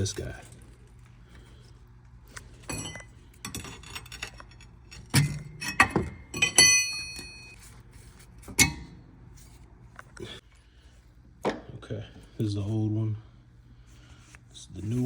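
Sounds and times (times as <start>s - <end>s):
metal clinks and knocks: 2.6s - 7.6s.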